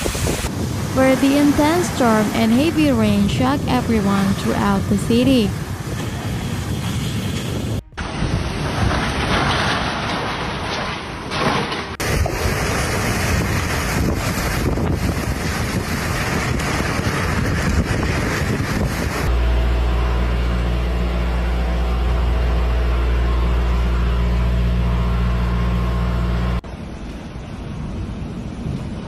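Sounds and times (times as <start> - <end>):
storm wind buffeting microphone: 0.0 - 10.7, 12.0 - 24.2
low droning hum: 12.0 - 28.8.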